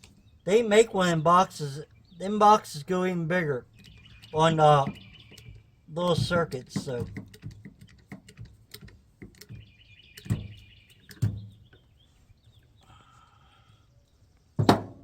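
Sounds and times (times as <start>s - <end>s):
hand tools clicking and tapping: 3.8s - 11.9s.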